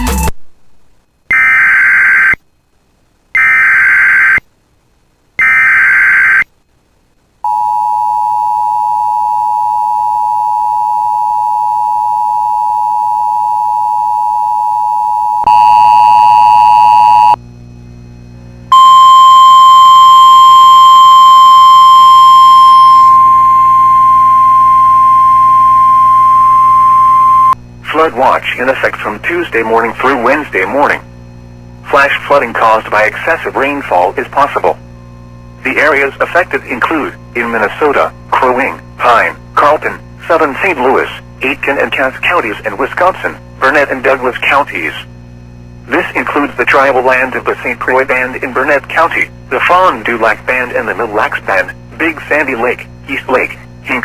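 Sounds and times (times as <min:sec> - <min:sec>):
screechy data bursts: 0:03.4 - 0:04.4, 0:05.4 - 0:06.4
two-tone attention signal: 0:18.7 - 0:27.6.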